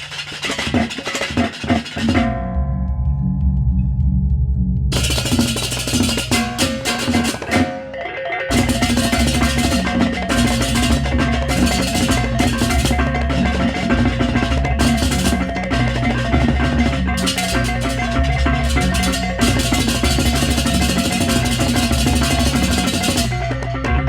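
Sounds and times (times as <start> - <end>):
drums: 0.0 - 2.7, 4.9 - 24.0
tuned gongs: 2.0 - 24.0
clashing cymbals: 5.0 - 7.9, 8.5 - 23.6.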